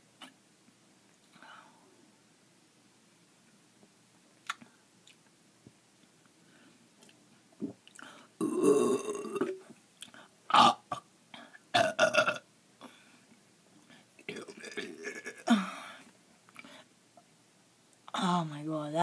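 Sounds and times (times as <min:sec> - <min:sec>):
person burping: 0:08.4 - 0:09.6, 0:10.5 - 0:11.1, 0:11.7 - 0:12.4, 0:14.3 - 0:15.8.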